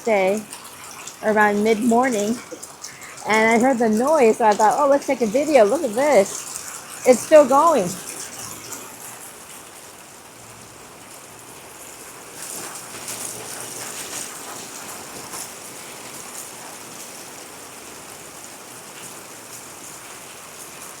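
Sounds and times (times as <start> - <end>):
hail falling: 0.0 - 21.0.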